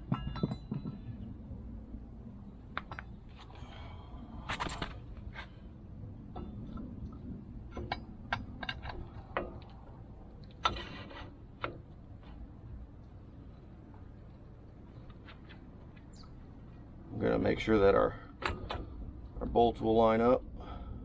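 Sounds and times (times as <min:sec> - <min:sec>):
ringing metal clanks: 0:00.0 - 0:01.0
metal clinks and knocks: 0:00.0 - 0:01.1, 0:04.5 - 0:05.5.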